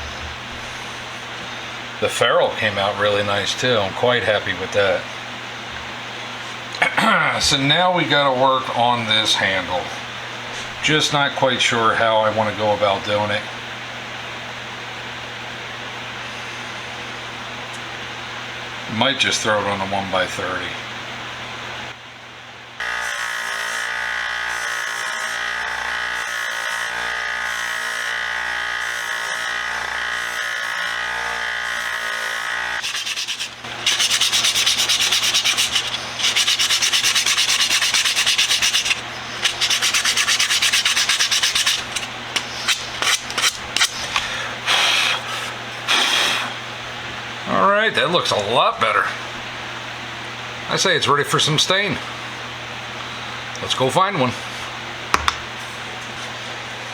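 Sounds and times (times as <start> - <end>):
belt sander humming: 0.0 - 6.7, 22.8 - 46.8
harsh sanding of wood: 31.6 - 46.5.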